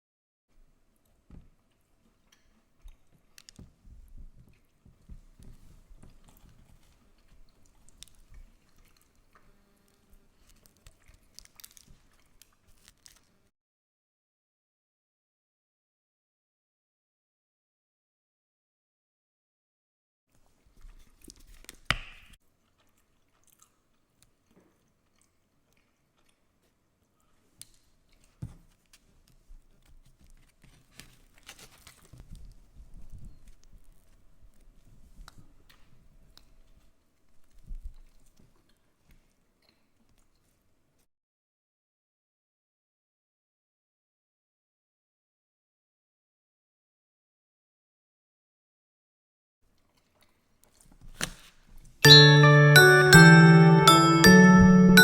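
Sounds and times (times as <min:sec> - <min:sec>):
person chewing soft food: 0:22.6 - 0:26.5.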